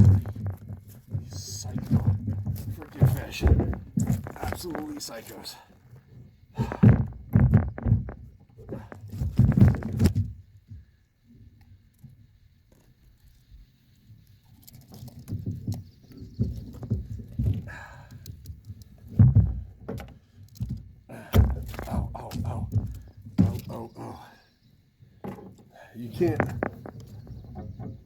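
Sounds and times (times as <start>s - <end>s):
fish thrashing thumps: 0.0s - 5.2s, 6.5s - 10.4s, 15.2s - 24.2s, 25.2s - 28.0s.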